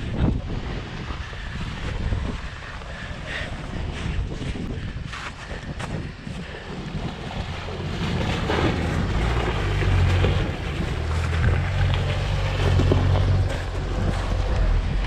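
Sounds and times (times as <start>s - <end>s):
vehicle engine under load: 0.0s - 15.0s
wind-like rushing noise: 0.0s - 15.0s
knocks and rattles: 7.0s - 15.0s.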